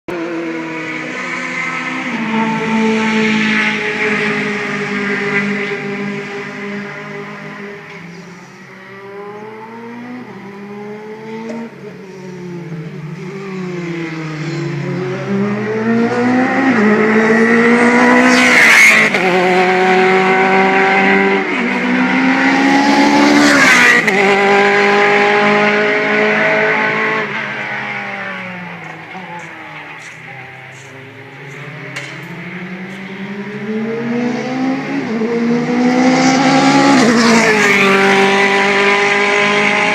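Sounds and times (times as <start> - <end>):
race cars passing at speed: 0.1 - 39.9.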